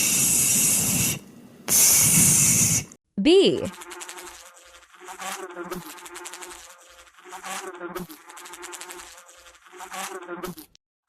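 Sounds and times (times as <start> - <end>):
bee buzzing: 3.7 - 10.8.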